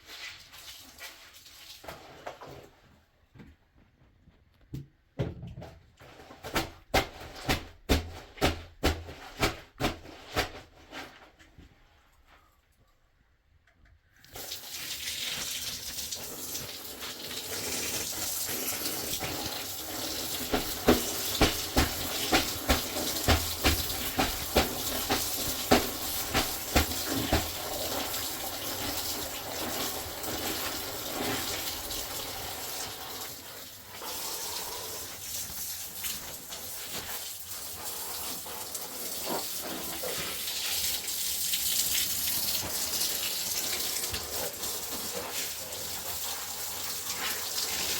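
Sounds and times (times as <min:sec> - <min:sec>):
water pouring: 0:00.0 - 0:02.5, 0:14.2 - 0:47.9.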